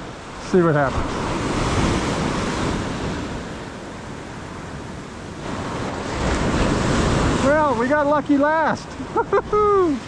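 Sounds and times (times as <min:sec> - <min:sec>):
ocean surf breaking on beach: 0:00.0 - 0:10.0
wind on microphone: 0:00.9 - 0:07.8.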